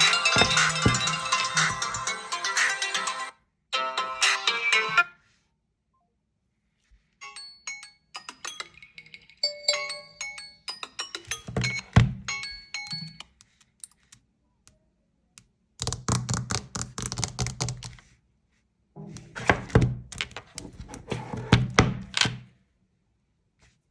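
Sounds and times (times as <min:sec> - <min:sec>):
handling taps and thunks: 0:00.0 - 0:02.1, 0:11.3 - 0:12.5, 0:19.0 - 0:22.4.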